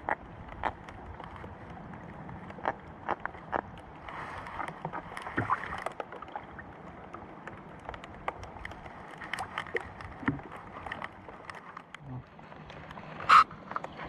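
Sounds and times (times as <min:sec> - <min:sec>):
rain pattering on boat and water: 0:00.0 - 0:14.0.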